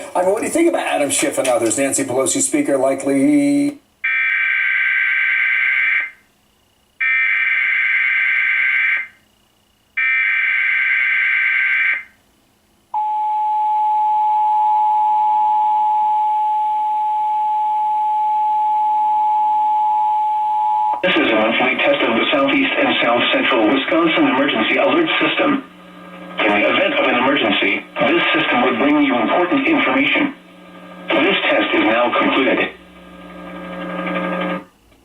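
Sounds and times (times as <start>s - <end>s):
steady two-tone attention signal: 13.0s - 21.0s.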